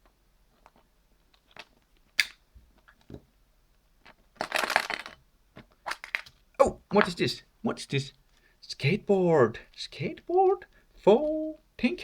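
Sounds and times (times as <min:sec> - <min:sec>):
plastic egg crunching open: 0:04.1 - 0:05.2, 0:05.8 - 0:06.4.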